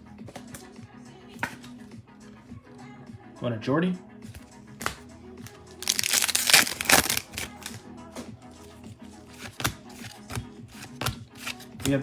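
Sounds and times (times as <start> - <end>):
background music: 0.0 - 12.0
cards clicking: 4.4 - 12.0
foil wrapper tearing: 5.8 - 7.8.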